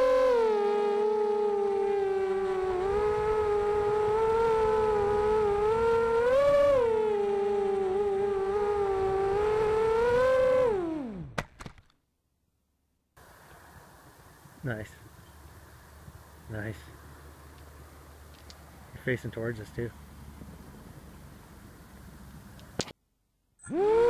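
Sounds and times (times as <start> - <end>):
drone motors whining: 0.0 - 11.4, 23.6 - 24.0.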